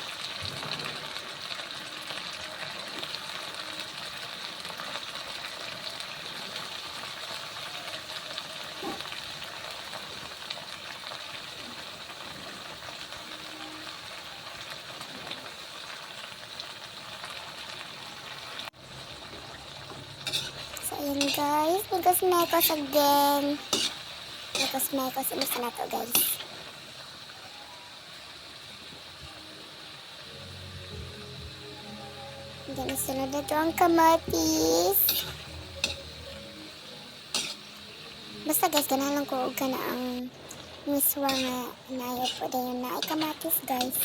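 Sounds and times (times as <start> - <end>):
food sizzling in oil: 0.0 - 44.0.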